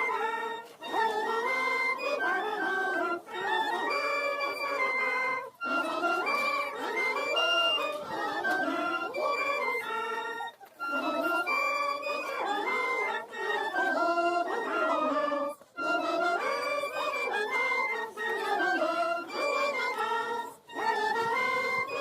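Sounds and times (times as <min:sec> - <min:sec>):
congregation singing a hymn: 0:00.0 - 0:22.0.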